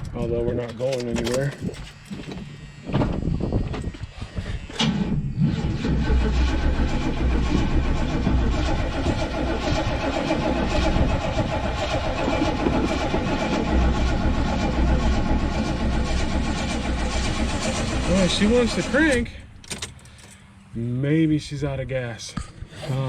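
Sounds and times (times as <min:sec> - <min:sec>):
car engine cranking without starting: 0:00.0 - 0:02.3, 0:04.7 - 0:20.5.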